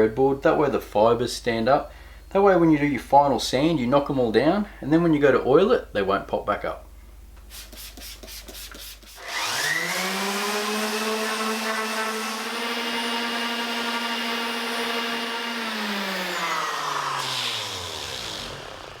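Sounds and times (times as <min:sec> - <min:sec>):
power tool motor whine: 0:09.2 - 0:19.0.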